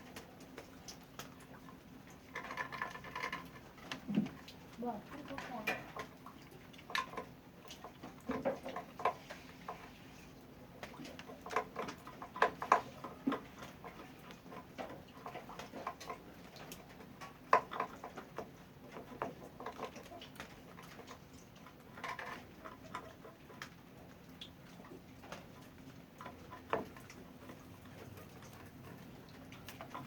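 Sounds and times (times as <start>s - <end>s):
rabbits scrabbling in cage: 0.0s - 9.8s.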